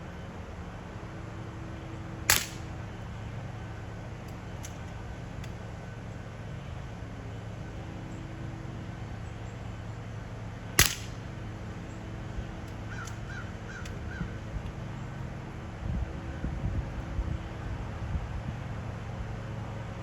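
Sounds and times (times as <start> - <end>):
hvac hum: 0.0 - 20.0
air rifle shot: 2.3 - 2.8, 10.8 - 11.4
bird calling: 12.8 - 14.4
wind rumbling on microphone: 15.6 - 19.4.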